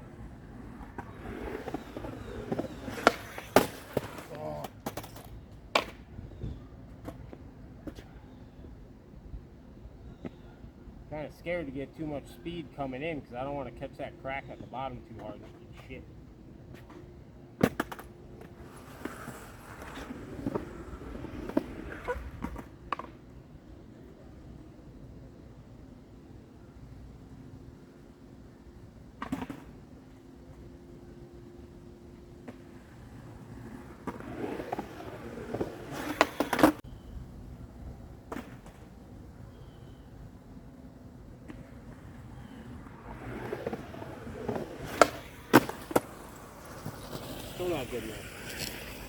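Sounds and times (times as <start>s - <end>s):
skateboard clack: 0.0s - 6.4s, 16.7s - 23.4s, 32.4s - 36.8s, 41.3s - 49.0s
skateboard wheels rolling: 0.0s - 49.0s.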